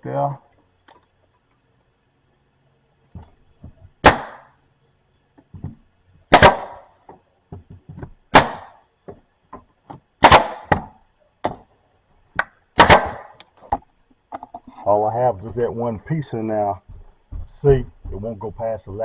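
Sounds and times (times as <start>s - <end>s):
nail gun shots: 4.0s - 4.5s, 6.3s - 6.9s, 8.3s - 8.8s, 10.2s - 11.0s, 12.8s - 13.4s.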